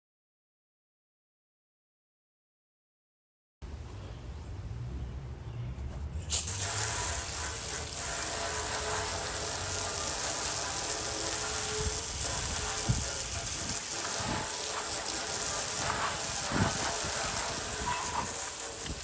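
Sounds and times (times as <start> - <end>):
hose water hissing on sink: 6.3 - 19.0.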